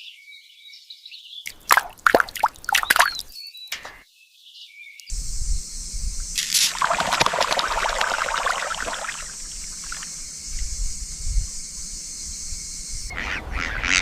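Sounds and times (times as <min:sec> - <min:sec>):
water splashing and sloshing: 0:01.5 - 0:03.3, 0:06.4 - 0:10.2
steady hiss: 0:05.1 - 0:13.1.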